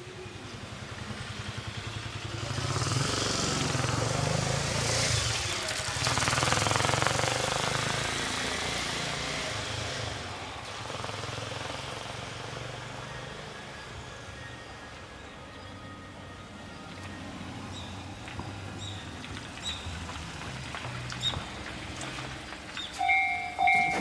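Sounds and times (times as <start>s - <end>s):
street background: 0.0s - 24.0s
vehicle passing with rattling pulse: 0.7s - 14.3s.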